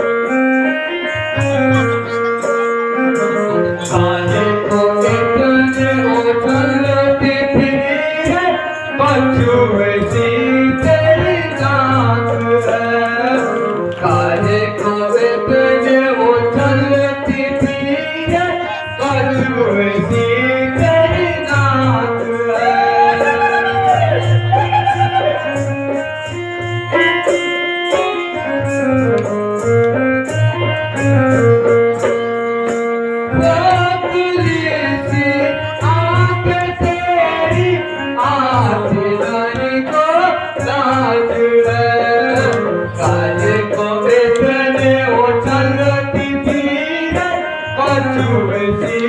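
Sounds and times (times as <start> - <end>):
held instrumental melody: 0.0 - 49.0
hand drum beat: 18.2 - 28.1.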